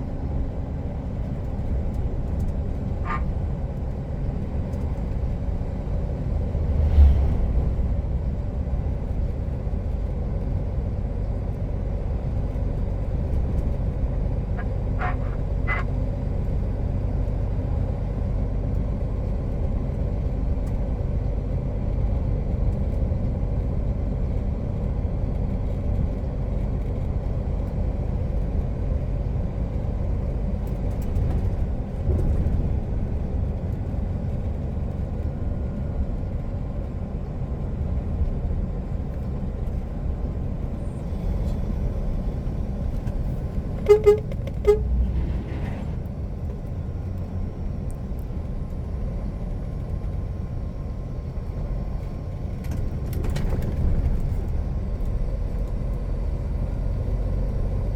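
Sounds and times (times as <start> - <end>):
road rumble: 0.0 - 57.9
truck diesel engine running: 7.5 - 22.5.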